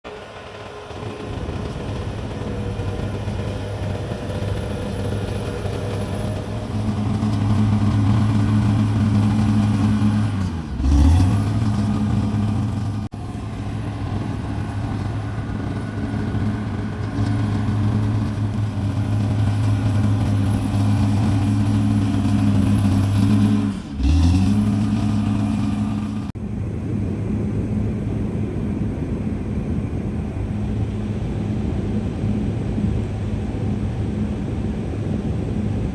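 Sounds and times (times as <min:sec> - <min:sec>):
bulldozer diesel engine under load: 0:00.0 - 0:26.4.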